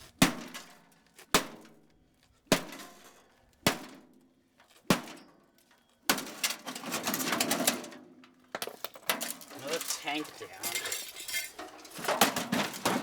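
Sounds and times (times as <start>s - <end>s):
breaking parts clattering: 8.6s - 13.0s.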